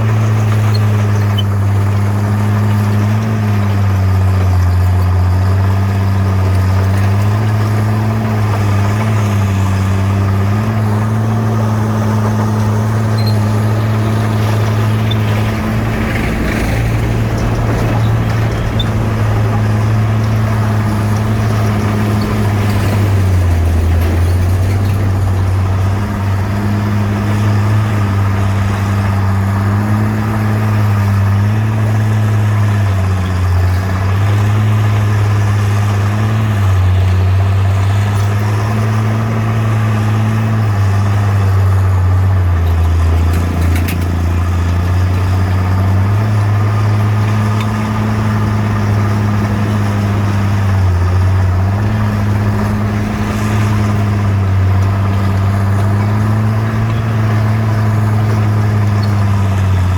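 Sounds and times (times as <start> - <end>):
bulldozer diesel engine running: 0.0 - 59.9
metal clanks: 12.1 - 30.1.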